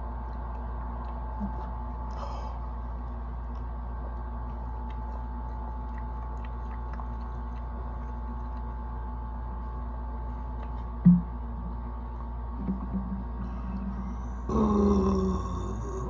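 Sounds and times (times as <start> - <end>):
soft clicks and mouth sounds: 0.0 - 2.2, 3.0 - 8.9
low steady hum: 0.0 - 16.0.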